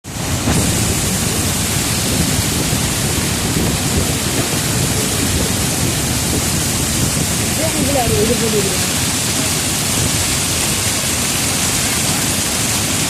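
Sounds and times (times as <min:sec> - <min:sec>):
floodwater roaring: 0:00.0 - 0:13.0.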